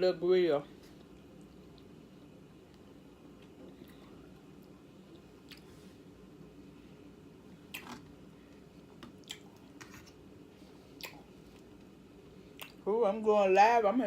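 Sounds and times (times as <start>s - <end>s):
low steady hum: 0.0s - 14.0s
person chewing: 0.9s - 2.0s, 2.6s - 5.8s, 7.7s - 8.0s, 9.1s - 10.3s, 10.9s - 11.9s, 12.5s - 12.8s
wet mouth clicks: 9.2s - 9.5s, 11.0s - 11.2s, 12.6s - 12.8s.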